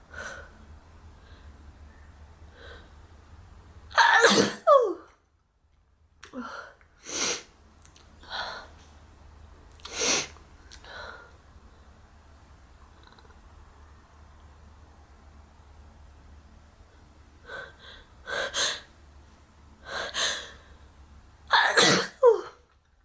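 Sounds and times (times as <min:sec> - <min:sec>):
noisy breaths: 0:00.0 - 0:03.4, 0:09.9 - 0:12.3, 0:16.8 - 0:21.2
person sneezing: 0:04.0 - 0:05.0, 0:21.5 - 0:22.6.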